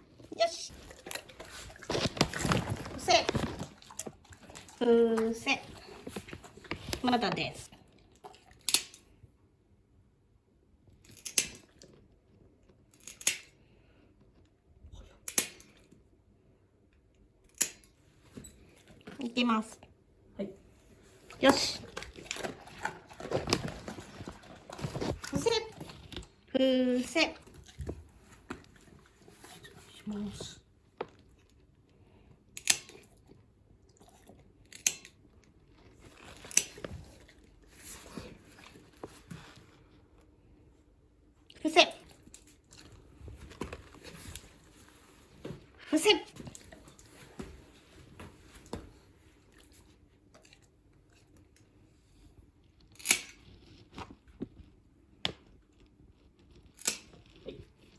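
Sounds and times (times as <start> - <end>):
nail clipper clipping toenails: 11.1 - 11.7, 12.9 - 13.6, 15.3 - 15.7, 32.6 - 33.0, 53.0 - 53.4
nail clippers clicking: 13.0 - 13.6.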